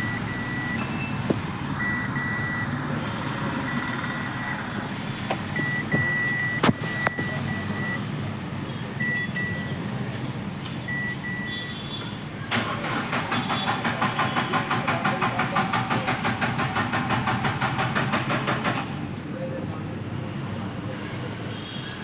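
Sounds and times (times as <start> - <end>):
short high beeps: 0.0 - 2.7, 3.7 - 4.6, 5.6 - 8.0, 9.0 - 9.8
car engine cranking: 0.0 - 8.0, 12.4 - 19.0.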